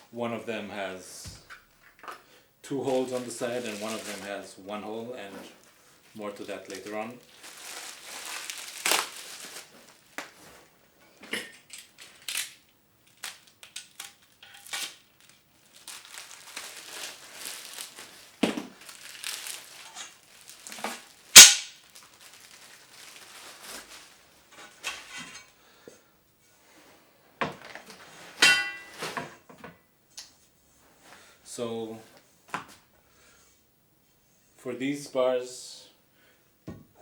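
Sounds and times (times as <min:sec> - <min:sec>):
plastic packaging crinkling: 0:02.7 - 0:10.8, 0:11.7 - 0:25.0.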